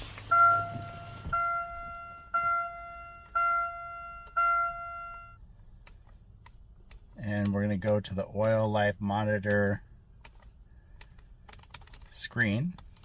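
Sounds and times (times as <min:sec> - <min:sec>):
dashboard warning chime: 0:00.2 - 0:05.4.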